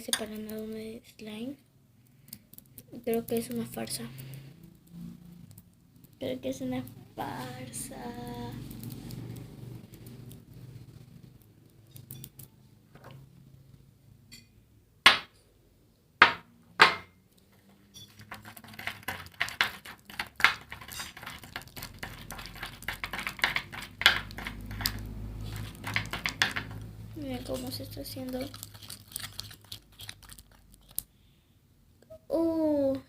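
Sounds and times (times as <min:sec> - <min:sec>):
spoon stirring slime: 0:00.0 - 0:00.8, 0:02.3 - 0:10.6, 0:17.4 - 0:31.1
clinks and scrapes: 0:11.7 - 0:13.2, 0:17.4 - 0:31.1
spoon knocking on container: 0:18.2 - 0:26.8.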